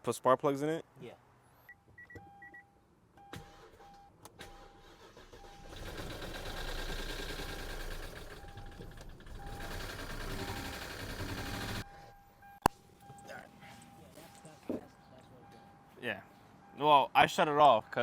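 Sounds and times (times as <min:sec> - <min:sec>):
car chime beeping: 0:01.7 - 0:05.7, 0:08.3 - 0:15.9
car engine cranking and running: 0:04.3 - 0:11.9.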